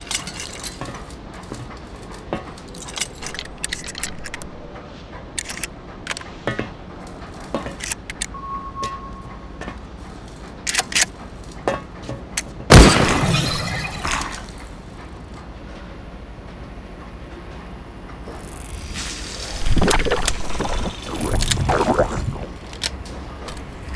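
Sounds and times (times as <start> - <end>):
light clinks and clicks: 0.0 - 15.4
loud shattering crash: 12.7 - 14.7.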